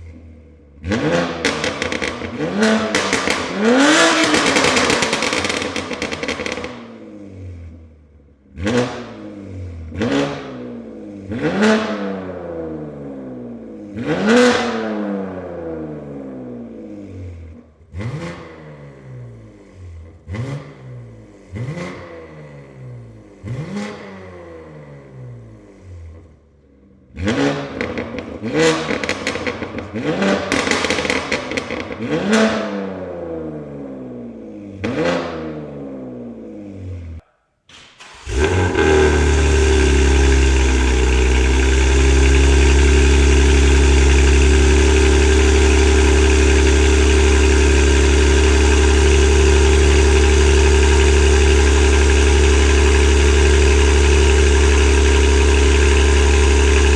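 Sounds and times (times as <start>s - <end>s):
car engine revving: 0.8s - 6.7s, 38.0s - 56.9s
car engine idling: 38.0s - 56.9s.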